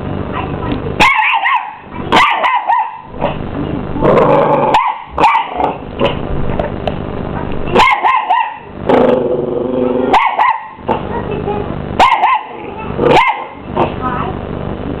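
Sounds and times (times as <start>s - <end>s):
steady low hum: 0.0s - 15.0s
puppy yapping: 1.0s - 3.4s, 4.7s - 5.8s, 7.7s - 8.7s, 10.1s - 10.8s, 12.0s - 13.6s.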